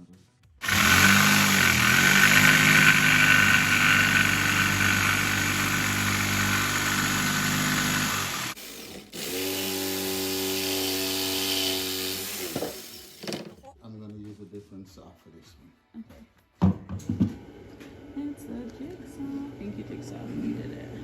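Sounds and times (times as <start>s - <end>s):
power saw cutting wood: 0.6s - 13.6s.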